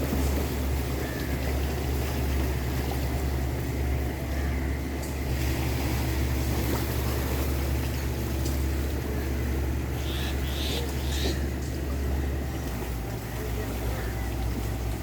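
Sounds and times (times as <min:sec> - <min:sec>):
boat engine droning: 0:00.0 - 0:15.0
water noise: 0:00.0 - 0:15.0
wind: 0:00.0 - 0:15.0.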